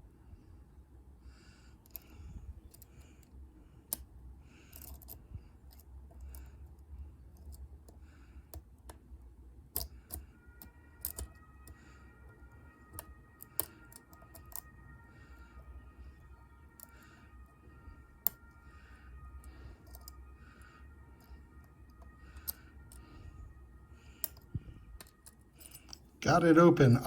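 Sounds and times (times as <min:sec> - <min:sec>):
lock pick clicking and scraping: 0:01.8 - 0:02.1, 0:02.7 - 0:09.1, 0:09.7 - 0:11.8, 0:12.8 - 0:14.8, 0:16.2 - 0:17.0, 0:18.2 - 0:18.6, 0:19.8 - 0:20.2, 0:21.2 - 0:23.0, 0:24.2 - 0:26.1.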